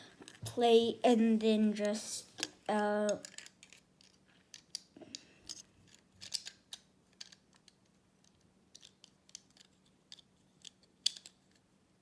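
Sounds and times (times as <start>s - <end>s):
plastic bricks clicking: 2.4s - 11.6s.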